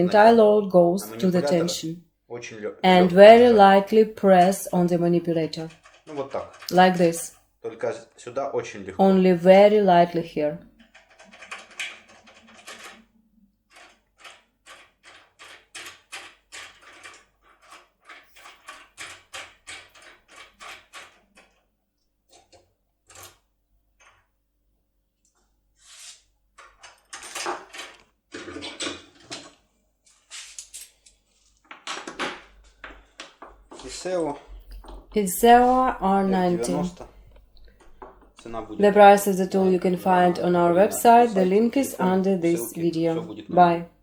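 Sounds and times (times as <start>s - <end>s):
scraping rattles: 3.2s - 7.0s, 10.7s - 13.1s.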